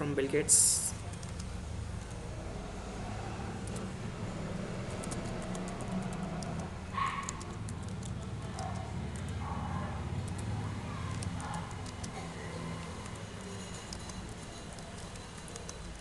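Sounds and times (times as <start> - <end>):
computer keyboard keys clicking: 1.0 - 2.2, 3.6 - 3.9, 4.8 - 9.4, 10.2 - 16.0.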